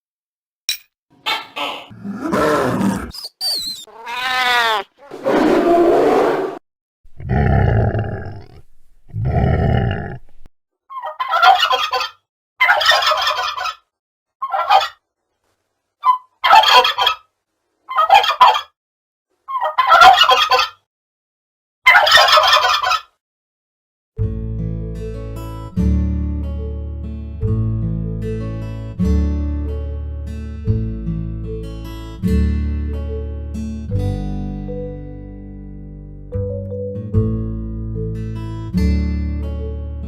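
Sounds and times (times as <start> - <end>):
short turkey calls: 10.9 - 13.8, 14.4 - 15.0, 16.0 - 17.3, 17.9 - 18.7, 19.5 - 20.8, 21.9 - 23.1
turkey gobbling: 10.9 - 13.8, 14.4 - 15.0, 16.0 - 17.2, 17.9 - 18.7, 19.5 - 20.8, 21.9 - 23.1.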